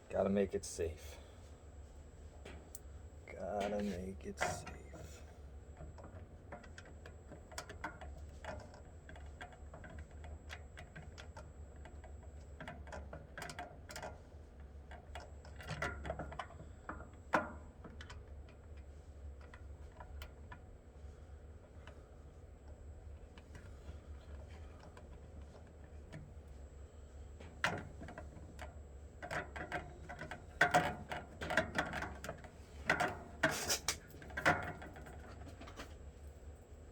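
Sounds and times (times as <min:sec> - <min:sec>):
steady low hum: 0:00.0 - 0:10.8, 0:15.8 - 0:36.9.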